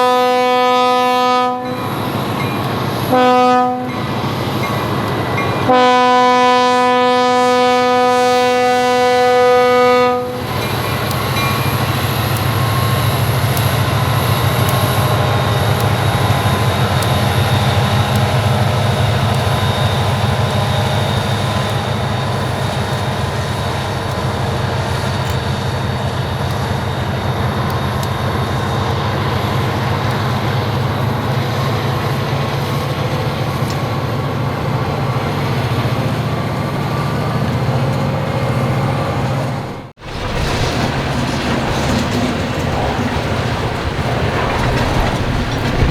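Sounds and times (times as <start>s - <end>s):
locomotive horn blast: 0.0s - 2.1s, 3.0s - 4.1s, 5.5s - 10.7s
train wheels on rails: 0.0s - 45.9s
diesel engine rumble: 37.9s - 45.9s.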